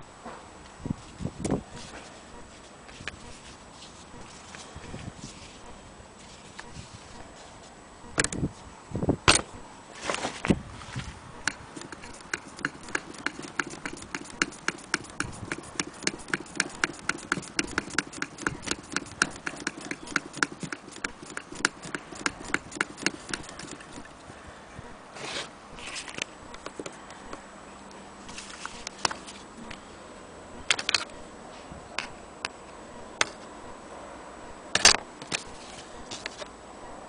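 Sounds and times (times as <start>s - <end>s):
sewing machine clicking: 11.5s - 24.1s.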